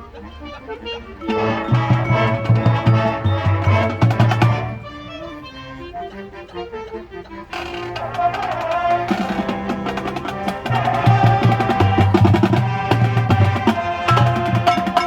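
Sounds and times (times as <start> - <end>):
marching band wind chords: 0.0 - 15.0
drumline percussion: 1.2 - 5.1, 8.0 - 15.0.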